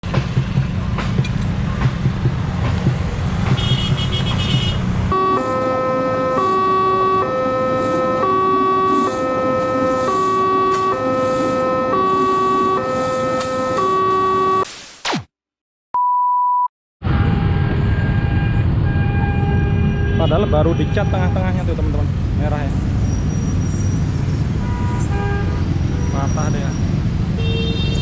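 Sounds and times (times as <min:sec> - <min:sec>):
electronic two-tone alarm: 0:05.1 - 0:14.7.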